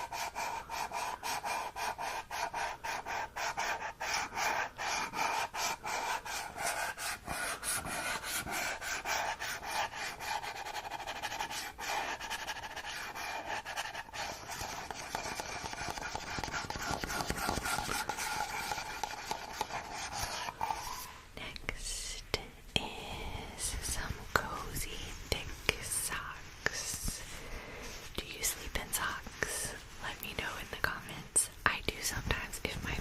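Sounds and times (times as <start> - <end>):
scratchy rubbing strokes: 0.0 - 21.2.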